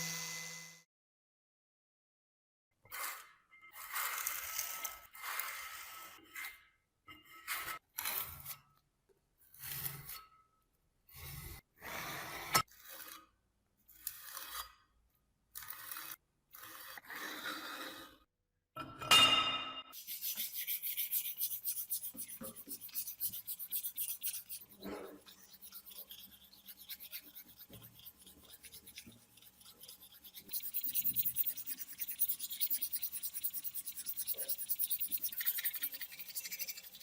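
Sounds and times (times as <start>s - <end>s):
scraping and rubbing on metal: 9.5s - 10.4s, 19.9s - 37.0s.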